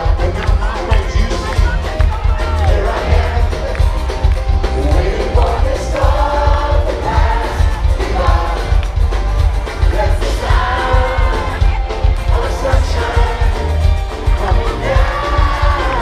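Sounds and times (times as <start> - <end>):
heavy bass beat: 0.0 - 16.0
live band music through speakers: 0.0 - 16.0
person singing: 0.0 - 16.0.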